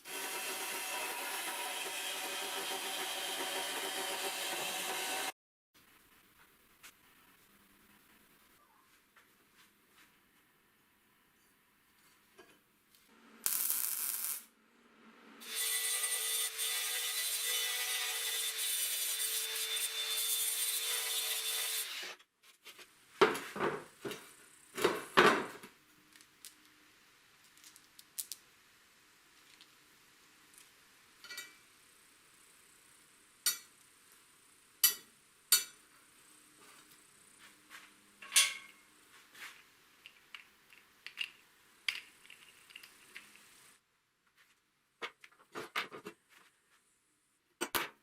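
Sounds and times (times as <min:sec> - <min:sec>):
power tool running: 0:00.0 - 0:05.4
tools clattering: 0:31.2 - 0:31.6, 0:38.2 - 0:38.8.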